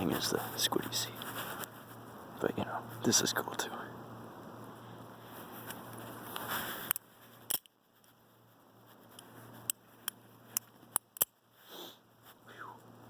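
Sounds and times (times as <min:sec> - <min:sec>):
sharp metal clicks: 0:06.9 - 0:07.8, 0:09.7 - 0:11.4.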